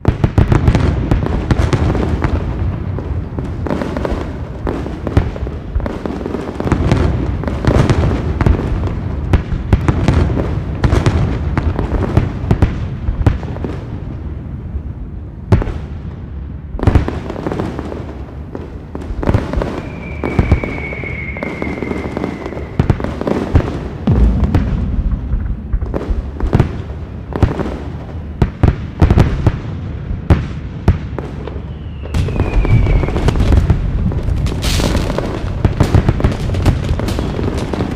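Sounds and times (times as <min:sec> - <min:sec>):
loud firework booms: 0:00.0 - 0:14.0, 0:15.5 - 0:37.9
firework bangs and pops: 0:00.0 - 0:14.2, 0:15.4 - 0:37.9
high firework whistle: 0:19.4 - 0:24.8, 0:31.6 - 0:33.6
deep rumble: 0:24.0 - 0:27.3.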